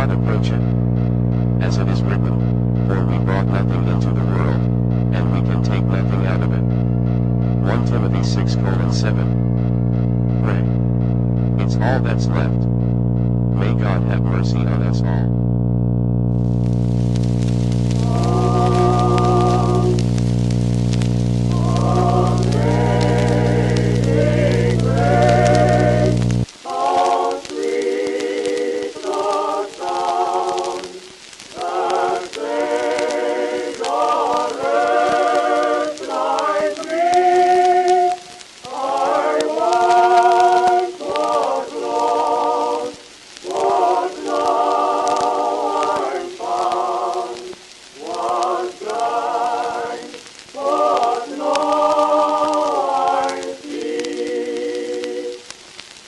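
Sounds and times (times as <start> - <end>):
choir singing held notes: 17.9 - 20.3, 21.3 - 55.5.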